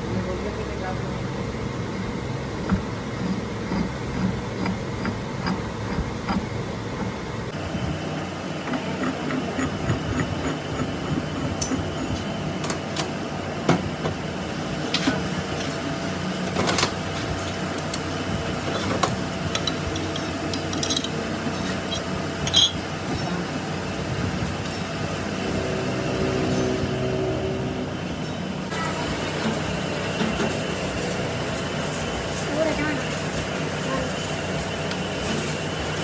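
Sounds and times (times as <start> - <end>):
machinery humming: 0.0 - 36.0
sharp metallic clicks and knocks: 2.6 - 7.2.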